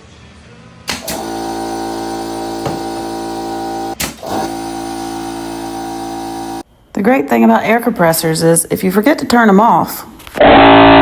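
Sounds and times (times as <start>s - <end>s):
air compressor running: 0.9s - 6.6s.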